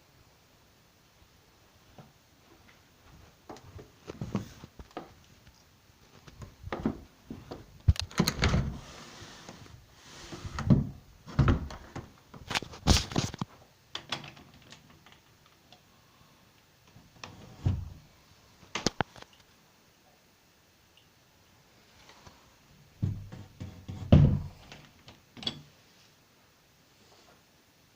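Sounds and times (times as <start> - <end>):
knocks and thuds: 23.0 - 24.6.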